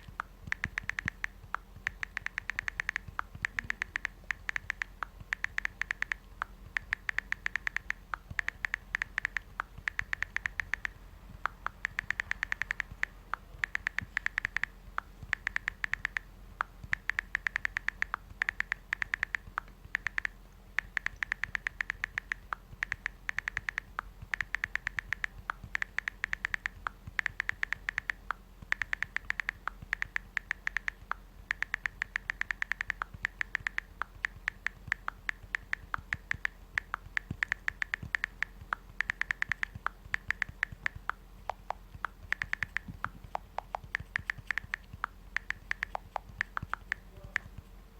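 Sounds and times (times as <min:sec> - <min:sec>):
phone keyboard tap clicks: 0:00.0 - 0:47.6.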